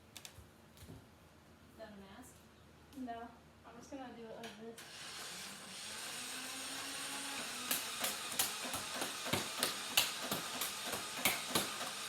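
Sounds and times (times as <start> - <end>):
toy blaster motor whirring: 4.8 - 12.0.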